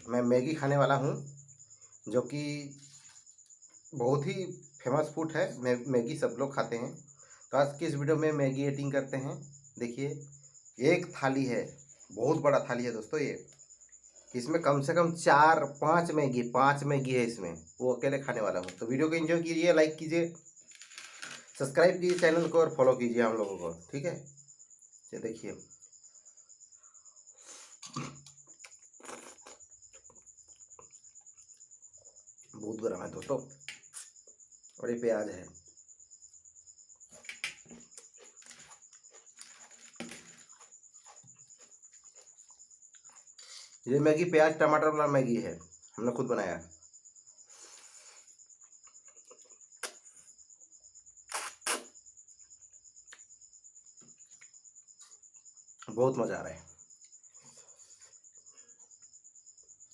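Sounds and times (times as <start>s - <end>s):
crickets chirping: 0.0s - 59.9s
crunching and chewing onion: 27.8s - 31.6s, 37.2s - 43.6s.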